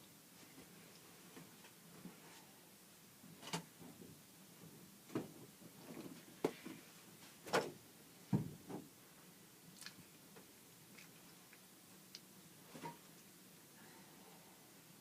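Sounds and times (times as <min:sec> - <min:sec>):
irregular knocks and bumps: 0:08.3 - 0:08.9.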